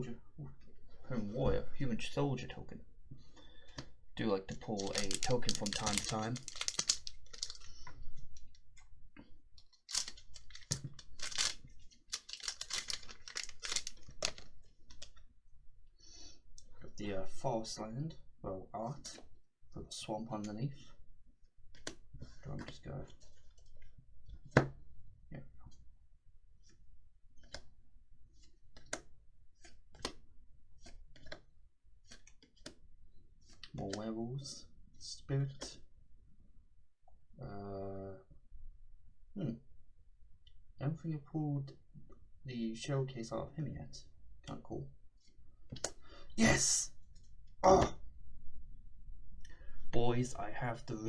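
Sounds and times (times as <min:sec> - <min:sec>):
trading cards flicking: 0:04.8 - 0:07.7, 0:09.9 - 0:14.5.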